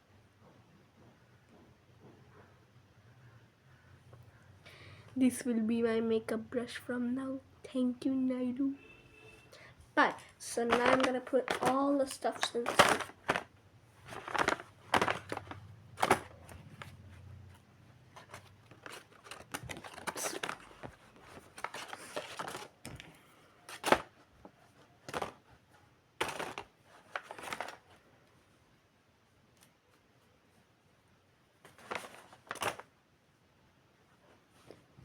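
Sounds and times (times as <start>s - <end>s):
packaging rustling: 10.4s - 25.5s, 26.2s - 28.0s, 31.7s - 32.9s.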